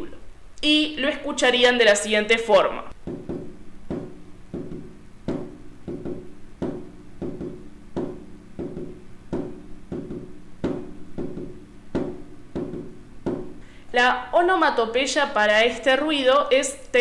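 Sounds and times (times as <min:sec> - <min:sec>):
heartbeat gallop soft thumps: 0:03.0 - 0:13.8.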